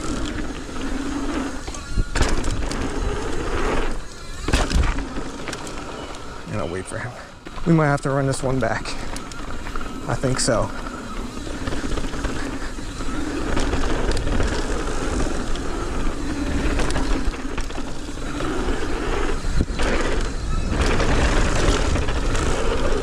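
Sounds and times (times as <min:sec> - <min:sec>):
wind rumble on microphone: 0:00.0 - 0:05.4, 0:09.0 - 0:23.0
bike clicks and rattles: 0:00.0 - 0:23.0
tyres hissing on dirt: 0:05.0 - 0:23.0.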